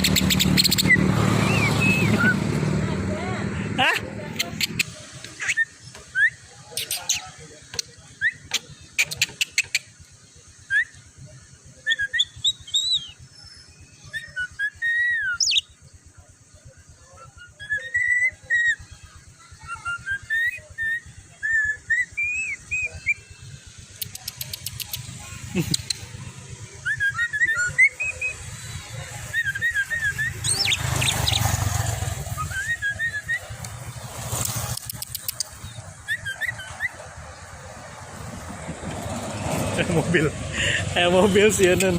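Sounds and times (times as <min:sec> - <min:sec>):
sharp bird clicks: 0:00.0 - 0:01.0, 0:04.3 - 0:06.0, 0:06.7 - 0:10.0, 0:23.9 - 0:26.1, 0:33.4 - 0:37.0
myna whistling and chirping: 0:00.0 - 0:02.6, 0:04.2 - 0:09.9, 0:10.5 - 0:11.1, 0:11.7 - 0:15.8, 0:17.1 - 0:19.0, 0:19.6 - 0:37.7
bird calling: 0:03.7 - 0:11.1, 0:17.2 - 0:37.8.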